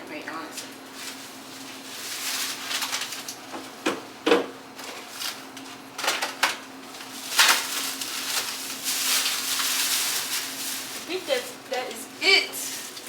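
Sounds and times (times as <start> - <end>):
rustling of bags: 0.9 - 3.8, 4.7 - 13.0
groceries knocking: 1.0 - 13.0.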